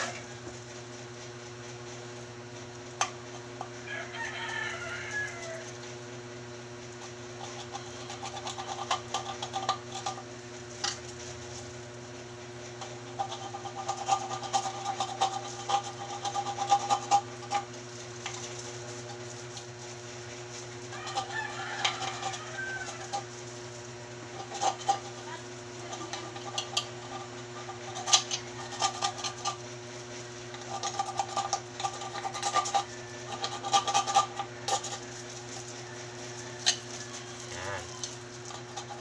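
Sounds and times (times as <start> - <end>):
rooster crowing: 0.0 - 0.5, 3.8 - 5.9, 20.9 - 23.3, 32.7 - 33.4, 35.6 - 38.2.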